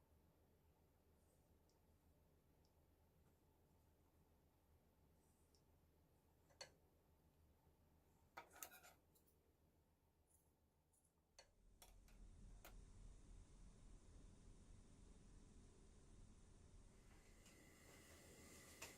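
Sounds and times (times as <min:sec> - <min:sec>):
faint low hum: 0:00.0 - 0:18.9.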